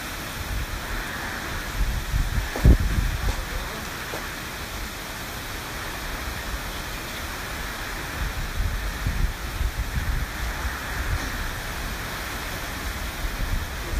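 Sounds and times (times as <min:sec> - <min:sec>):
rushing wind and rain: 0:00.0 - 0:13.9
wind buffeting microphone: 0:00.0 - 0:13.9.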